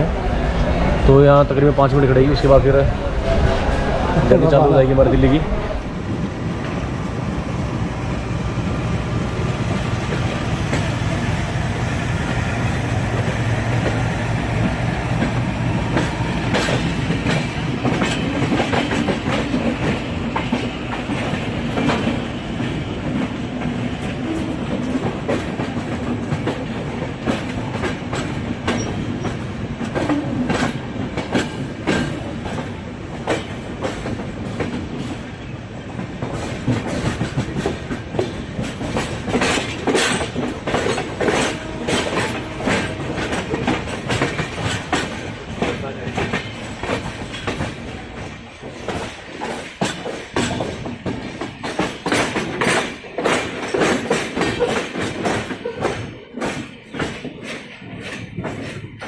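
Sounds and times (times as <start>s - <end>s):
train rumbling on rails: 0.0s - 59.0s
wheels clicking over rail joints: 14.6s - 59.0s.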